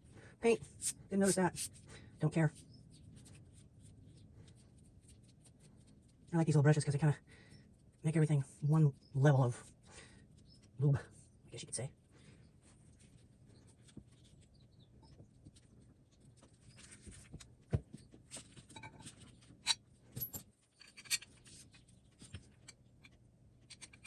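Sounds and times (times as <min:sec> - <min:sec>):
brush scraping: 0:00.6 - 0:01.9
metal parts clicking and clinking: 0:18.7 - 0:21.7, 0:22.6 - 0:24.0.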